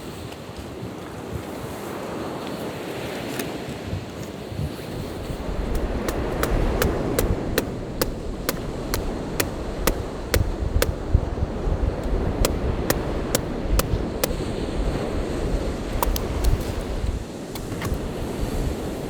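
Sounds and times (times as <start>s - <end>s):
wind: 0.0s - 19.0s
sharp knocks: 5.2s - 11.4s, 12.0s - 14.4s.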